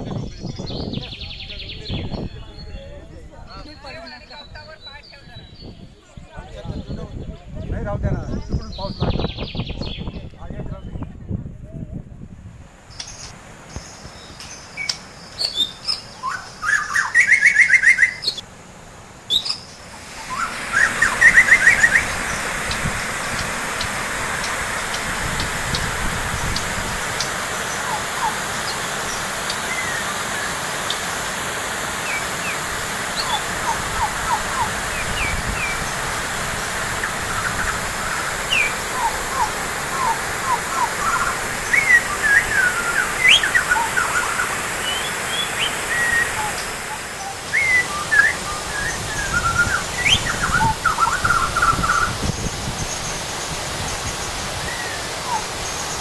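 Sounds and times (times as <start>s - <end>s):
small birds chirping and whistling: 0.0s - 11.2s, 12.9s - 18.4s, 19.3s - 56.0s
water rushing: 12.6s - 56.0s.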